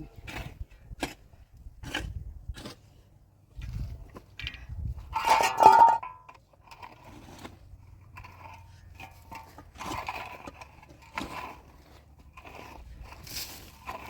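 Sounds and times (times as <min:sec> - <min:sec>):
metal clattering and scraping: 0:03.7 - 0:14.0.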